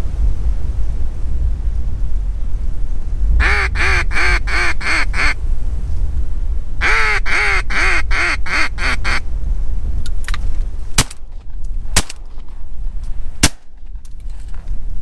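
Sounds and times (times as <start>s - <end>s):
low wind rumble on microphone: 0.0s - 15.0s
duck call quacks: 3.4s - 5.4s, 6.8s - 9.2s.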